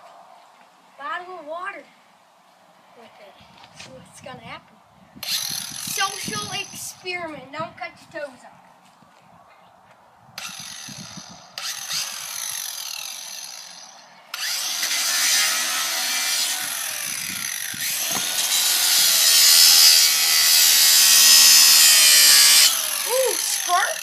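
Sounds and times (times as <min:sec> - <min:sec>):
grinder cutting plastic bottle: 0:05.2 - 0:06.9, 0:10.4 - 0:24.0.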